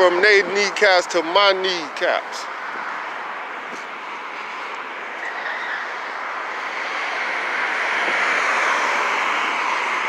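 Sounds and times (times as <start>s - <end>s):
car road and wind noise: 0.0s - 10.0s.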